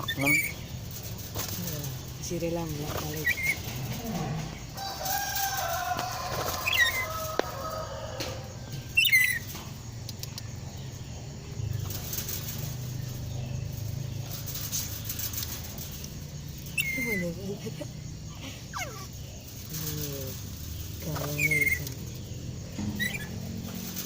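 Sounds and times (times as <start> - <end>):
steady low hum: 0.0 - 24.0
parrot calling: 18.5 - 19.2, 22.9 - 23.4.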